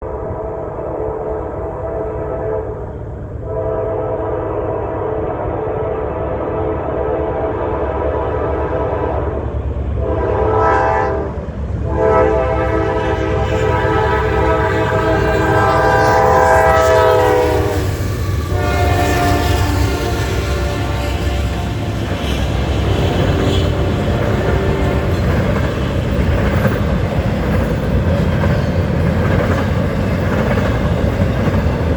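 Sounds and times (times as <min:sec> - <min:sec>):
locomotive horn blasts: 0:00.0 - 0:09.4, 0:10.0 - 0:25.8
train rumble: 0:00.0 - 0:31.9.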